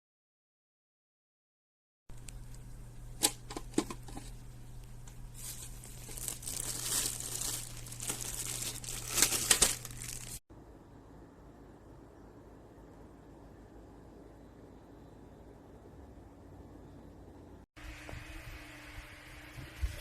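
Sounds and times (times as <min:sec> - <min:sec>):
low steady hum: 0:02.1 - 0:20.0
packaging crinkling and rustling: 0:05.3 - 0:10.4.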